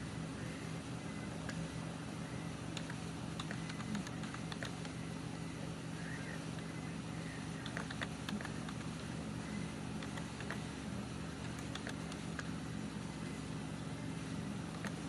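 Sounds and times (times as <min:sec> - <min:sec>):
steady low hum: 0:00.0 - 0:15.0
keyboard keys clicking: 0:02.8 - 0:05.0, 0:07.6 - 0:08.9, 0:11.4 - 0:12.5.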